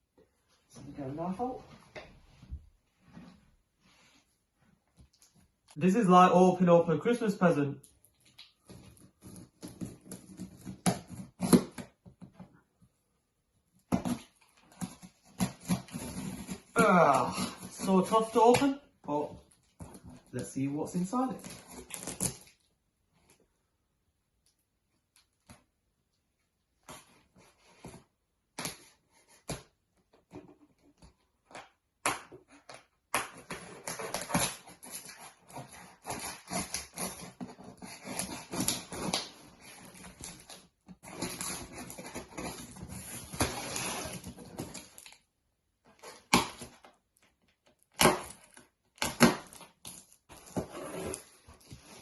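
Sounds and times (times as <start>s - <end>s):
cardboard tearing: 8.7s - 12.0s, 13.9s - 18.8s, 21.2s - 22.6s, 32.4s - 45.2s, 47.7s - 52.0s
knife cutting cardboard box: 8.7s - 12.2s, 13.9s - 18.8s, 21.4s - 22.6s, 32.2s - 45.0s, 47.8s - 52.0s.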